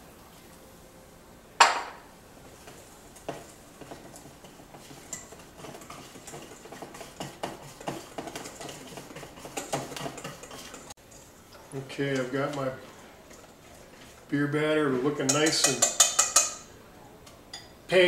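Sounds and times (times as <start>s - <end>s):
whisk tapping against bowl: 2.6s - 11.2s, 15.1s - 16.7s.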